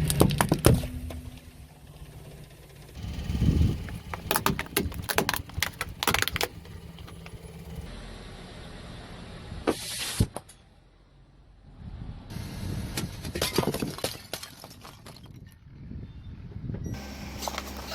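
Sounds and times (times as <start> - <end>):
low rumble: 0.0 - 9.6
steady low hum: 0.8 - 9.6
tyre crushing brittle objects: 3.8 - 7.4.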